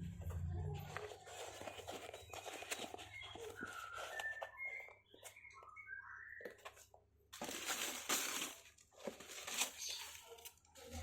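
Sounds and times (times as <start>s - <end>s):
packaging crinkling and rustling: 0.3s - 5.3s, 7.4s - 11.0s.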